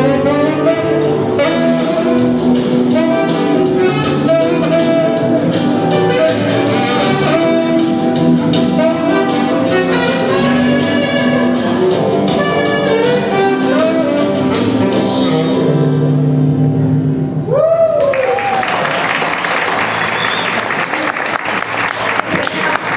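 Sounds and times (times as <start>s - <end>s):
saxophone playing lead: 0.0s - 16.5s
bass accompaniment: 0.0s - 22.9s.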